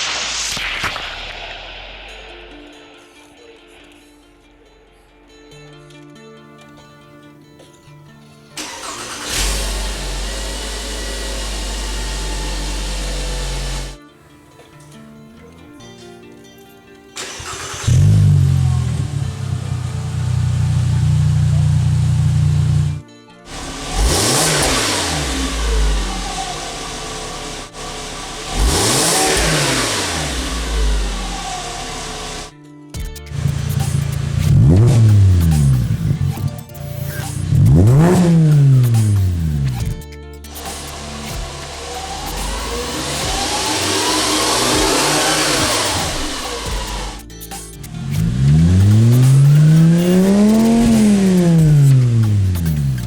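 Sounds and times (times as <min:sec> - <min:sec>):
background music: 0:00.0 - 0:53.0
car engine cranking: 0:08.6 - 0:14.0, 0:17.2 - 0:53.0
car engine idling: 0:08.6 - 0:14.0, 0:17.2 - 0:32.5, 0:33.3 - 0:53.0.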